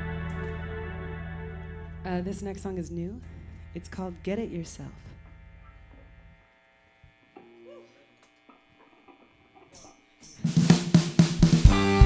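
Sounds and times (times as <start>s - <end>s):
amplifier hum: 0.0s - 9.4s
rock band playing: 10.5s - 12.0s.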